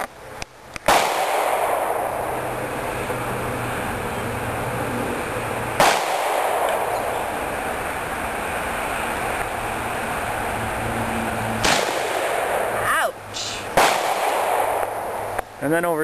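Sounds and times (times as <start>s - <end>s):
shotgun shots: 0.8s - 2.3s, 5.8s - 7.3s, 11.6s - 12.8s, 13.7s - 15.3s.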